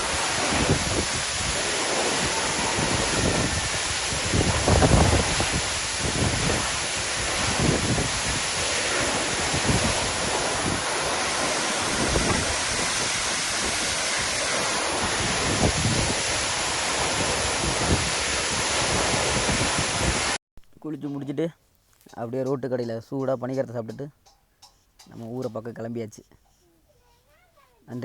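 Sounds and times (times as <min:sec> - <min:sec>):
waterfall rushing and splashing: 0:00.0 - 0:20.4
wind buffeting microphone: 0:00.0 - 0:20.4.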